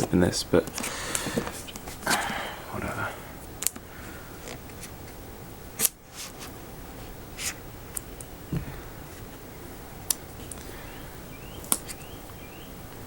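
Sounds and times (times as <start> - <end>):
dull thump: 8.5 - 8.8.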